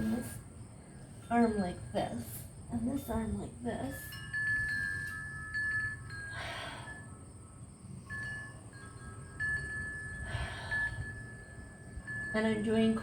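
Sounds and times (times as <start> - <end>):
wind chimes ringing: 0.0 - 13.0
rushes of breath: 10.2 - 11.4.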